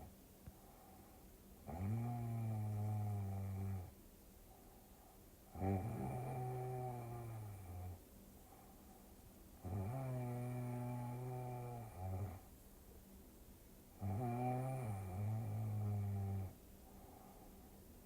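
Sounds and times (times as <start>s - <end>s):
person snoring: 1.7s - 3.9s, 5.6s - 8.0s, 9.6s - 12.4s, 14.0s - 16.5s.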